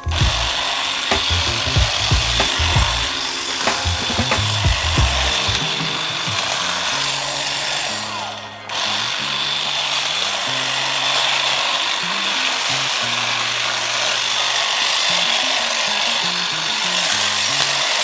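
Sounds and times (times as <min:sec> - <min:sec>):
background music: 0:00.0 - 0:13.6
hedge trimmer motor whining: 0:00.0 - 0:18.0.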